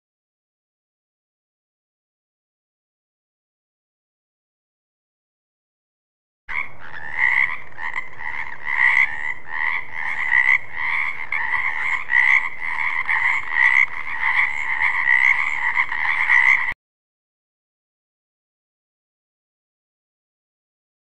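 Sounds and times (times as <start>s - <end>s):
frog croaking: 6.5s - 16.8s.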